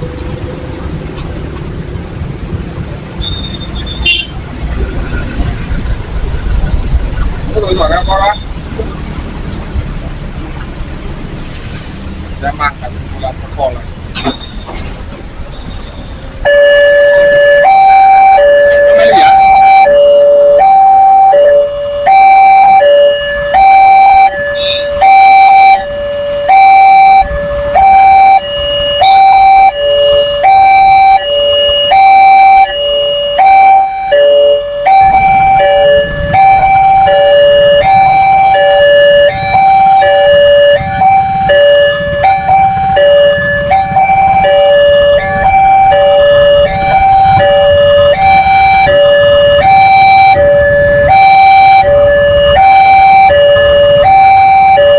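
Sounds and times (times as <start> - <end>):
two-tone level-crossing alarm: 16.4 - 54.9.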